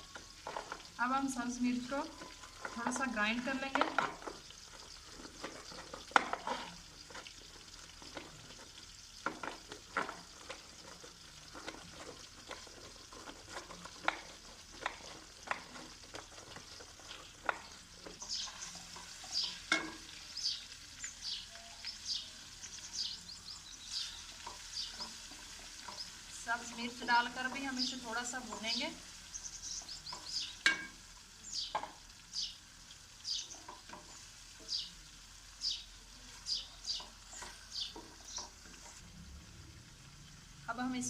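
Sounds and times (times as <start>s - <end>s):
onions frying: 0.0s - 41.0s
chillies being crushed: 2.2s - 20.5s.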